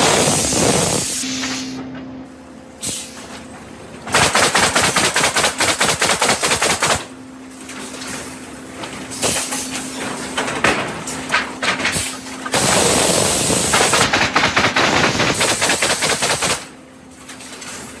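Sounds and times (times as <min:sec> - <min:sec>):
pneumatic nail guns firing: 0:00.0 - 0:01.7, 0:04.1 - 0:07.1, 0:09.1 - 0:09.6, 0:11.8 - 0:16.7.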